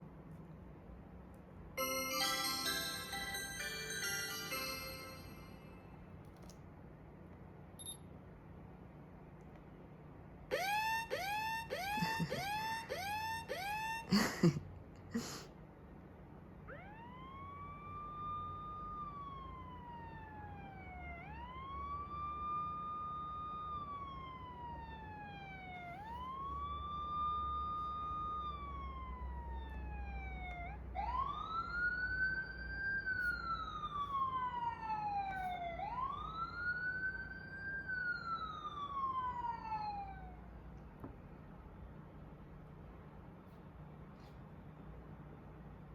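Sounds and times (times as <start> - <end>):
wailing siren: 10.5 - 14.2, 16.6 - 40.5.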